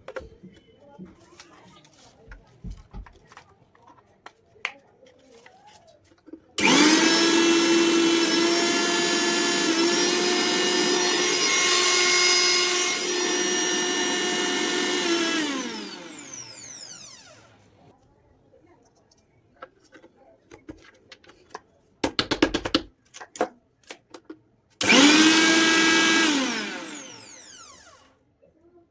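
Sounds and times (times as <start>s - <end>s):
mixer grinder motor whining: 6.6s - 17.9s, 24.8s - 28.2s.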